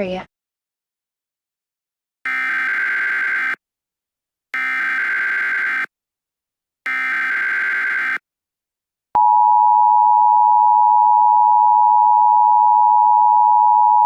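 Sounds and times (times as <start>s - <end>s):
data burst tones: 2.3s - 3.6s, 4.6s - 5.9s, 6.9s - 8.2s.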